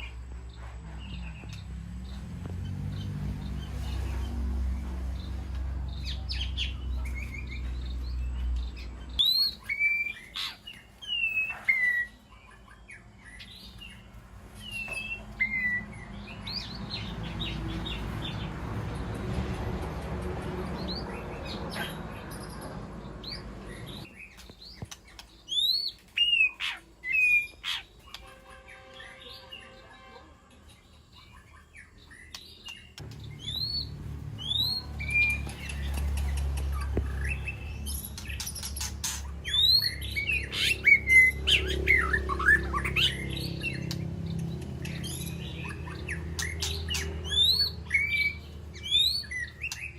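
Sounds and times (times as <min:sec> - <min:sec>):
bird singing whistled notes: 0:09.2 - 0:12.2, 0:44.8 - 0:49.9.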